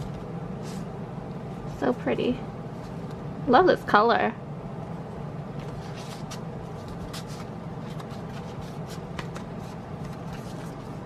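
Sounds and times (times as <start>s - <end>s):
steady low hum: 0.0s - 11.0s
paper and plastic rustling: 5.6s - 11.0s.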